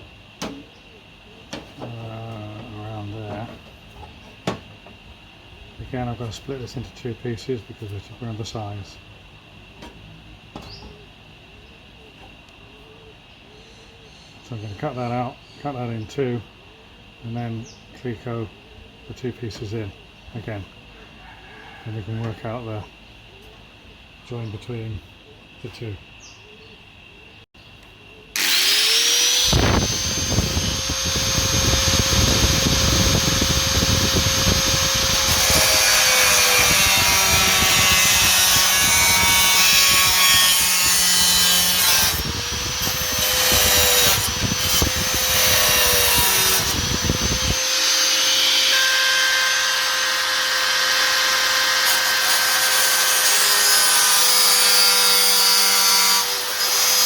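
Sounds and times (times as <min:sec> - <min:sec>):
power tool cutting sheet steel: 0:28.4 - 0:57.0.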